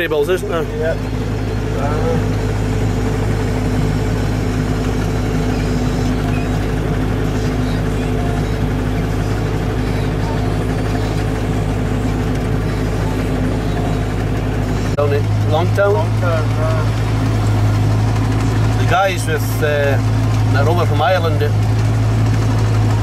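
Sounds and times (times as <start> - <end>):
tractor engine running steadily: 0.0 - 23.0.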